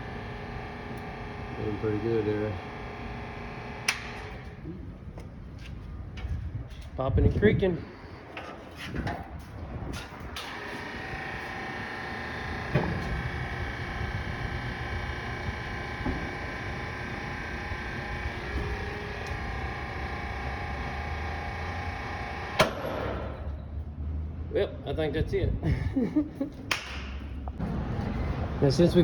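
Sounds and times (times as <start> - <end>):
hydraulic pump whining: 0.0 - 5.4, 9.9 - 23.6.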